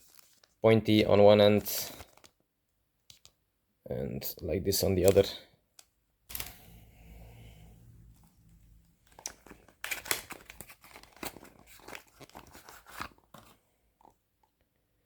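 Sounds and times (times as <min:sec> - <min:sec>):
packaging crinkling and rustling: 0:00.0 - 0:00.6, 0:01.8 - 0:02.4, 0:08.9 - 0:14.6.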